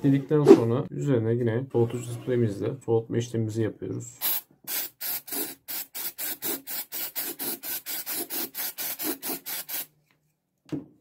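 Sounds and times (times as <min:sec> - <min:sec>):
aerosol spray hissing in short bursts: 0:04.2 - 0:09.9.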